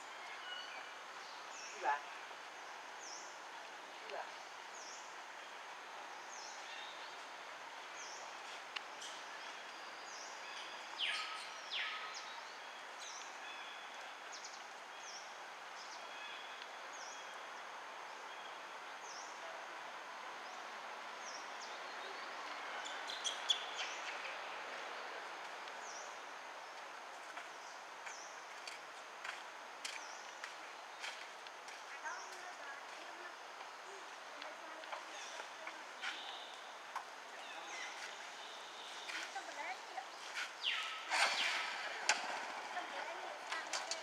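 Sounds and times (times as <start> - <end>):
outdoor background hiss: 0.0 - 44.0
birds chirping: 29.9 - 44.0.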